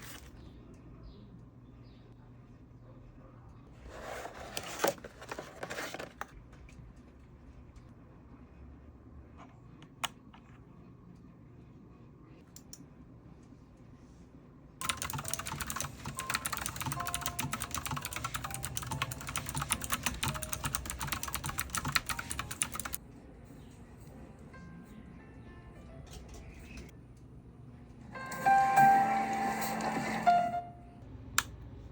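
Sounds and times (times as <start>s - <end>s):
keyboard typing clatter: 14.8s - 23.0s.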